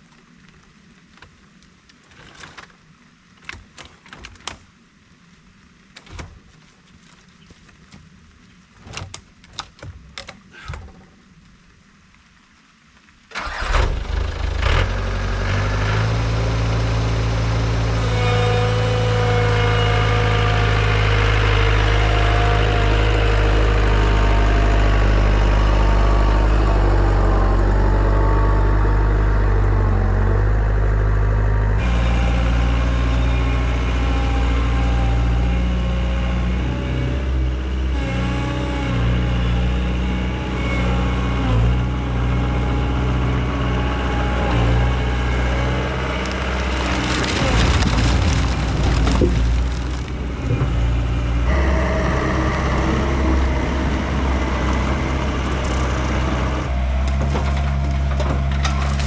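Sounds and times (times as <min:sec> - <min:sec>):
diesel engine running under load: 0:43.5 - 0:59.0
rattling clatter: 0:46.2 - 0:50.7.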